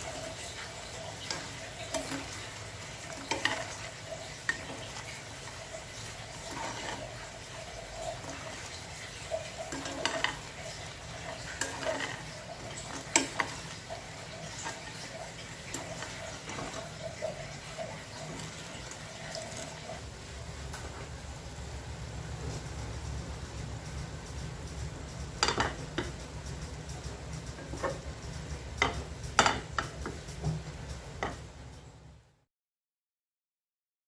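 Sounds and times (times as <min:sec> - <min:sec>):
utensil scraping a frying pan: 0:00.0 - 0:20.0, 0:25.3 - 0:26.2, 0:26.9 - 0:31.6
light sizzle: 0:00.0 - 0:32.4
utensil clicking against pan: 0:01.2 - 0:17.5, 0:25.2 - 0:31.5.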